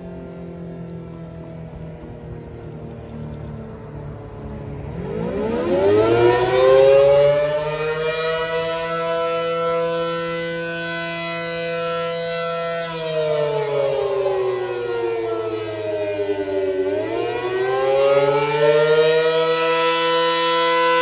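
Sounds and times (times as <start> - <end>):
tornado siren wailing: 0.0 - 21.0.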